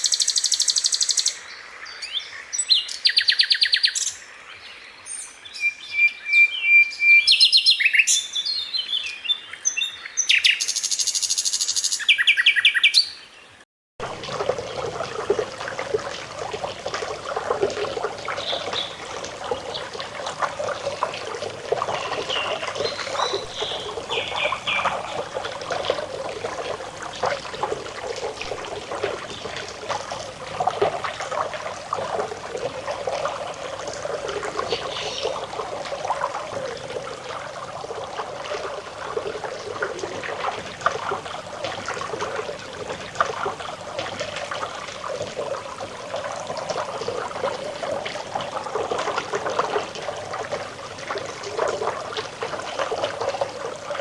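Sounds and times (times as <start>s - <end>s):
stream babbling over stones: 14.0s - 54.0s.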